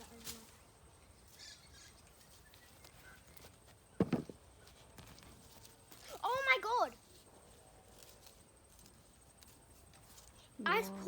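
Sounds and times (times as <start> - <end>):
faint rustles and clicks: 0.0 - 10.8
short dull thump: 4.0 - 4.4.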